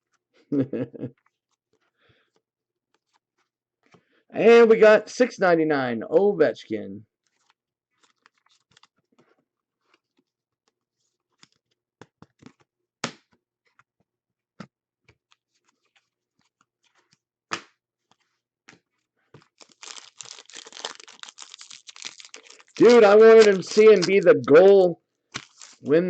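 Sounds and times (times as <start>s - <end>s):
pack wrapper crinkling and tearing: 19.5s - 25.9s
trading cards clicking and tapping: 22.7s - 25.8s.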